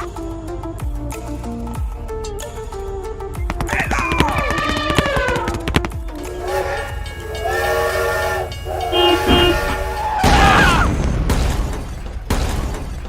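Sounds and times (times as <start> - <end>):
train horn blasts: 6.1 - 10.7.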